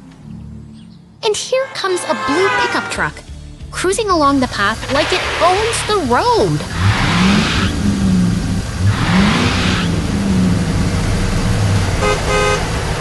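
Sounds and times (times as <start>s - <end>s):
horn toots: 1.2s - 3.4s, 11.4s - 13.0s
cartoon engine revving: 4.3s - 12.2s.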